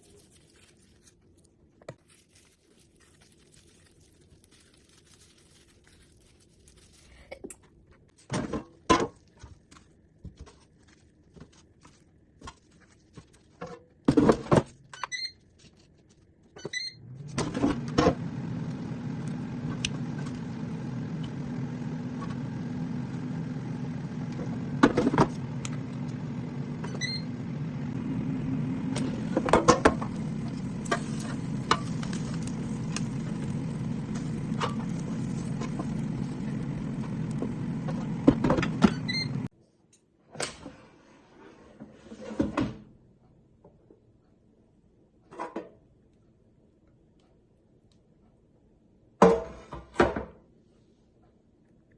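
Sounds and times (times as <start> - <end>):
air fryer fan humming: 16.6 - 39.5.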